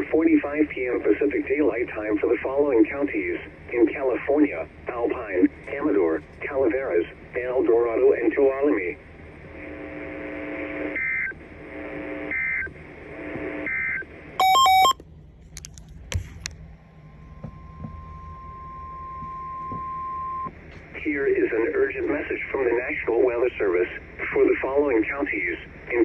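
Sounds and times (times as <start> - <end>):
data tone bursts: 14.4 - 15.0
single steady tone: 14.4 - 15.0
stepping touch-tone-like tones: 14.4 - 15.0.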